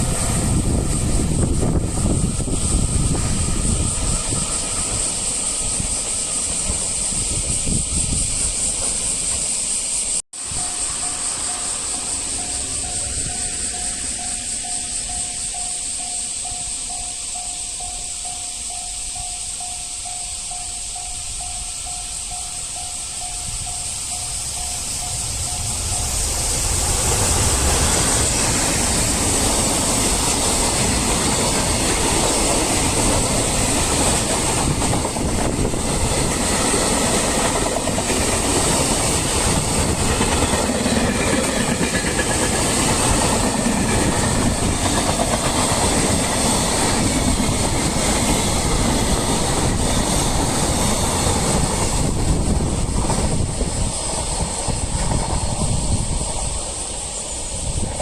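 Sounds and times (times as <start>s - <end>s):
train wheels clattering on rails: 0.0s - 58.0s.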